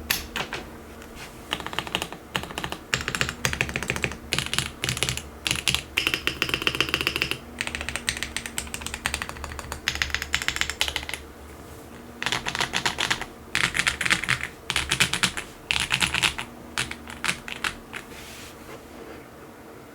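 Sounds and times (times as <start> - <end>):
typing on mechanical keyboard: 1.5 - 11.2, 12.2 - 18.1.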